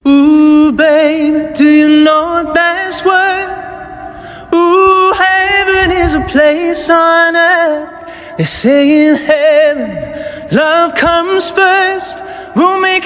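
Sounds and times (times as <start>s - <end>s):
person singing with vibrato: 0.0s - 13.0s.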